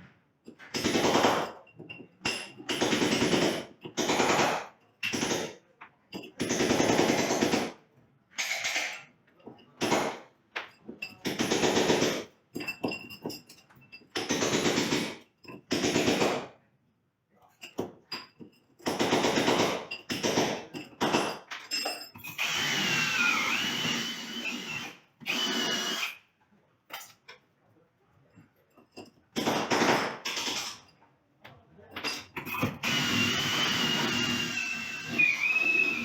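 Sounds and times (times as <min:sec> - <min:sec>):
electric drill whirring: 0:22.3 - 0:26.2, 0:32.6 - 0:36.0.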